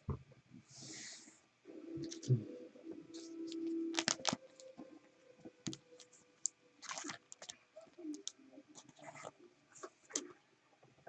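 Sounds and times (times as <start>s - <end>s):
cards sliding rustle: 3.2s - 4.7s
cards clicking on table: 3.5s - 4.4s.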